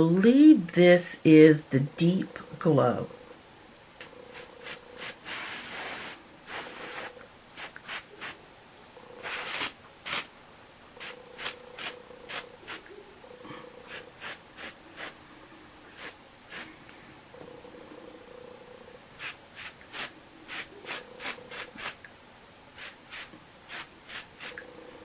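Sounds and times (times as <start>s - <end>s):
aerosol spray hissing bursts: 4.3s - 8.4s, 9.2s - 10.3s, 11.0s - 12.8s, 13.9s - 15.2s, 16.0s - 16.7s, 19.2s - 22.0s, 22.8s - 24.6s.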